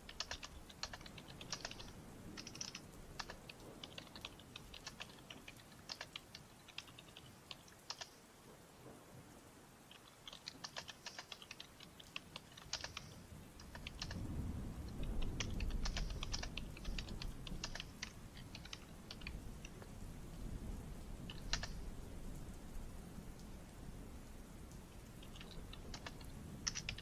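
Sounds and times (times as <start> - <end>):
typing on computer keyboard: 0.0 - 8.2, 9.9 - 19.9, 21.3 - 21.8, 25.1 - 27.0.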